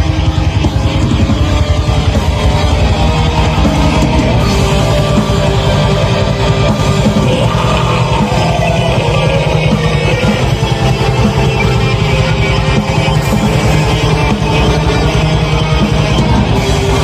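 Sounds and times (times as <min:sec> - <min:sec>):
distorted electric guitars: 0:00.0 - 0:17.0
rapid drumming: 0:00.0 - 0:17.0.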